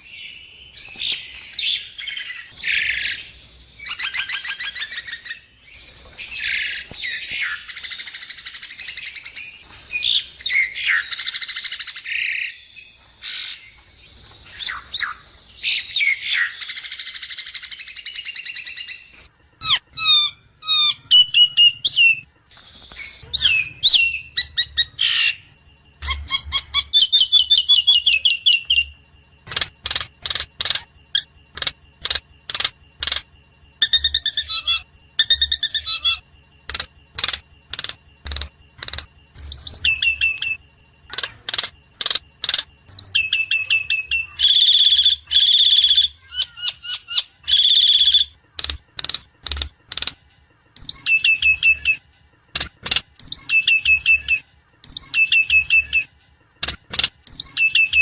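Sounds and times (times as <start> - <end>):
bird whistles and trills: 0.0 - 13.8, 14.4 - 25.4, 26.0 - 29.0, 33.8 - 40.6, 41.6 - 48.4, 50.8 - 52.0, 53.2 - 56.1, 57.2 - 58.0
bird raspy chatter and squawks: 19.6 - 50.1.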